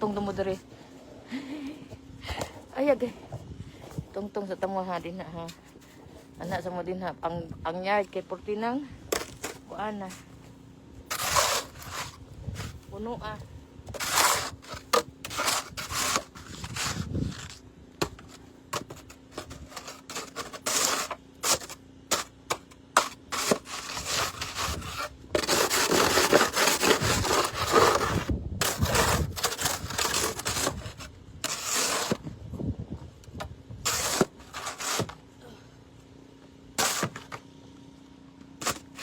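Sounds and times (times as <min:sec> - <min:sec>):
snow shovel scraping snow: 0:11.1 - 0:32.3, 0:33.8 - 0:35.2, 0:36.7 - 0:37.4, 0:38.6 - 0:39.0.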